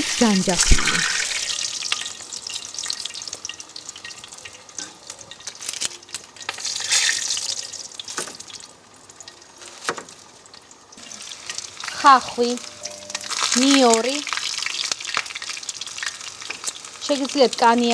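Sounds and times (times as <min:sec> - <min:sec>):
oil sizzling in a pan: 0:00.0 - 0:17.9.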